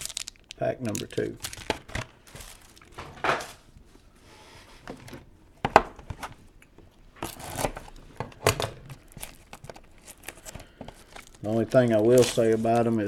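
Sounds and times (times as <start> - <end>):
wrapper tearing and crinkling: 0.0 - 3.6, 9.0 - 13.0.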